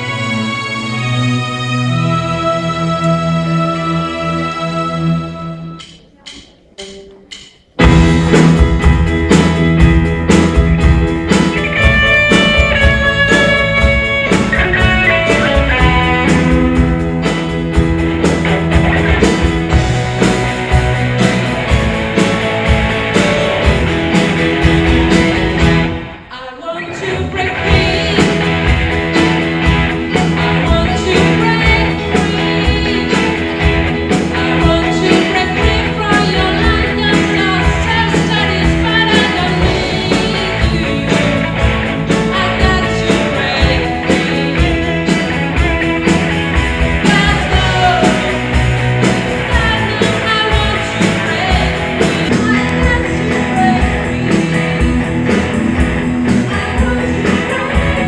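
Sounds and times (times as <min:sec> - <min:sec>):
steady drum beat: 0:05.8 - 0:26.2, 0:27.6 - 0:58.0
electric guitar: 0:07.8 - 0:58.0
person singing: 0:25.1 - 0:58.0.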